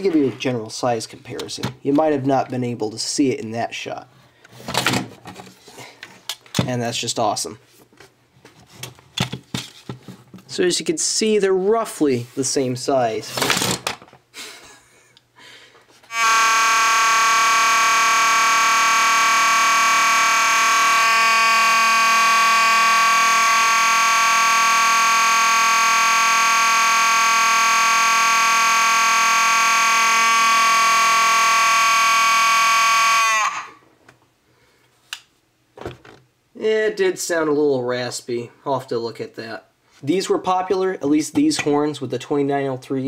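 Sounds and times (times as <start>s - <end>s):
fire alarm horn: 16.1s - 33.8s.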